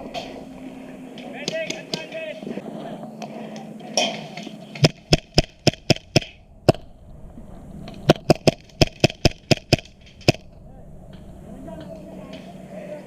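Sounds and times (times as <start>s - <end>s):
airsoft gun shots: 4.0s - 6.9s, 8.1s - 10.5s.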